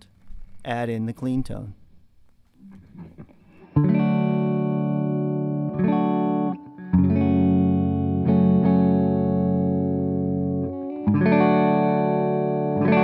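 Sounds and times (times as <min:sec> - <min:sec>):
compressed electric guitar chords: 0:02.6 - 0:13.0.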